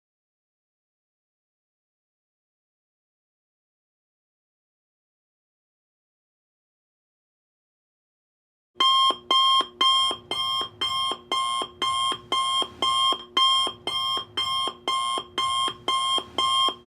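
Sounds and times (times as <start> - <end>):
electronic alarm ringing: 8.8 - 16.9.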